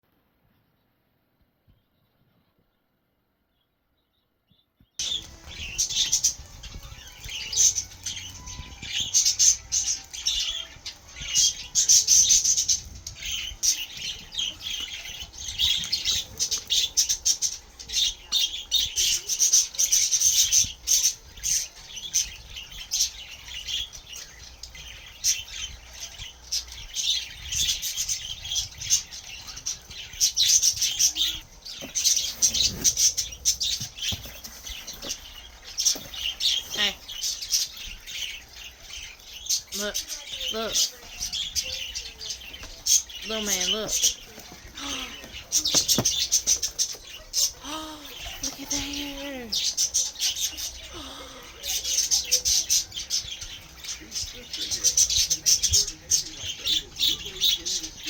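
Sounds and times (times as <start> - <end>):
paper crinkling and rustling: 31.8 - 37.1.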